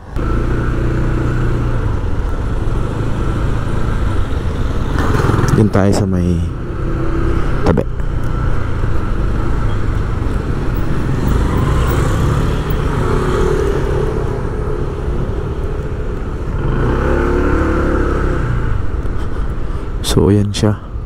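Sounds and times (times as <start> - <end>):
vehicle engines rumbling: 0.0 - 21.0.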